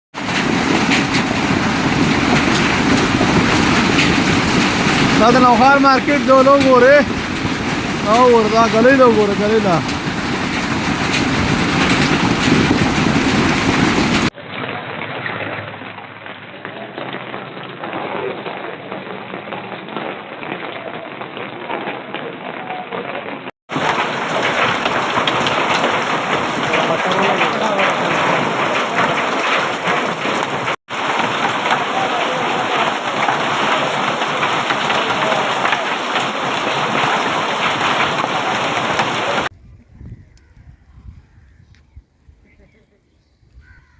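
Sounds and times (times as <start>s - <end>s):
heavy rain on hard surfaces: 0.1s - 14.4s, 23.3s - 39.5s.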